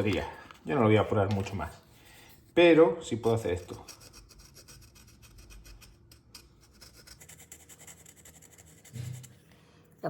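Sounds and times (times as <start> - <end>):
paint brush scratchy strokes: 6.6 - 9.5.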